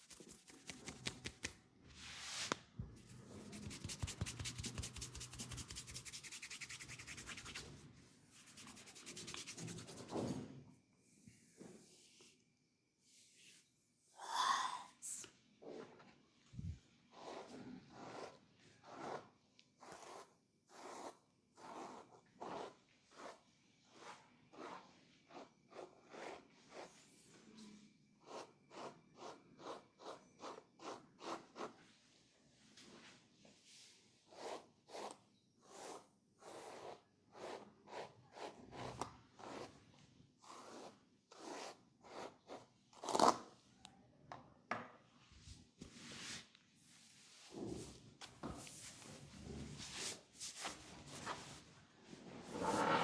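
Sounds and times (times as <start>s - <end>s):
hands rubbing hair and skin: 0.0s - 1.6s, 3.5s - 7.6s.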